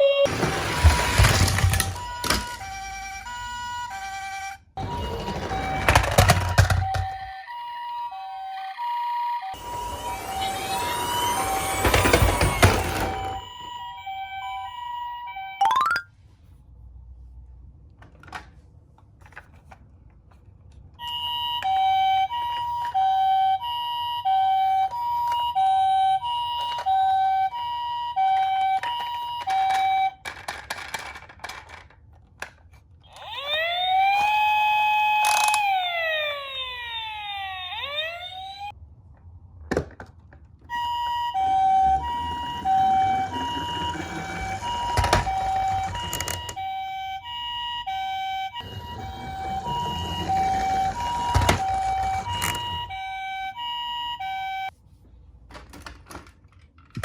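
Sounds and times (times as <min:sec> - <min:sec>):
wailing siren: 0:00.0 - 0:16.0, 0:21.0 - 0:30.2, 0:33.0 - 0:38.7, 0:40.7 - 0:54.7
toy ambulance two-tone siren: 0:00.0 - 0:16.1, 0:21.0 - 0:38.8, 0:40.6 - 0:54.8
rolling rattle: 0:00.3 - 0:07.3, 0:09.6 - 0:13.5, 0:41.6 - 0:46.6, 0:48.6 - 0:53.0.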